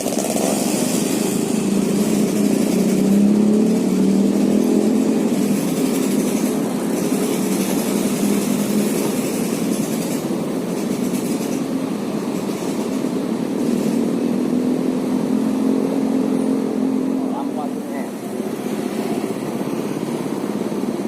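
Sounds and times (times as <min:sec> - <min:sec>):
hiss: 0:00.0 - 0:14.3
engine running steadily: 0:00.0 - 0:21.0.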